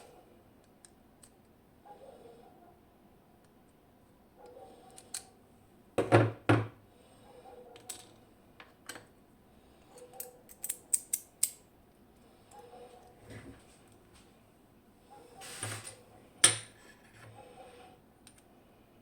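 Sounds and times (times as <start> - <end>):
lockpicking tools clicking: 9.9 - 11.6.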